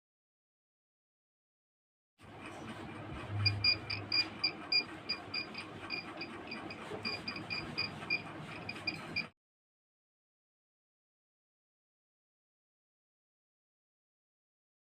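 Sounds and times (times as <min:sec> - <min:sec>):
high-pitched alarm buzzer beeping: 0:03.4 - 0:09.3.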